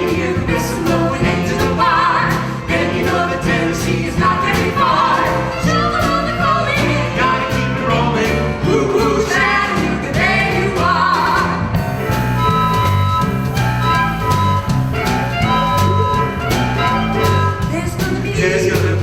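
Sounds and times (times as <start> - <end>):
live band playing: 0.0 - 19.0
stepping bass line: 11.4 - 19.0
singer holding notes with vibrato: 12.0 - 17.8.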